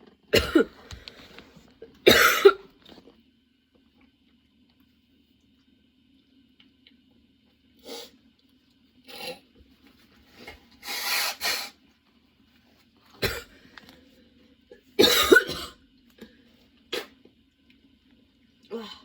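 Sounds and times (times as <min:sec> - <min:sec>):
woman coughing: 0:00.3 - 0:00.8, 0:02.0 - 0:02.7, 0:13.2 - 0:13.5, 0:15.0 - 0:15.8.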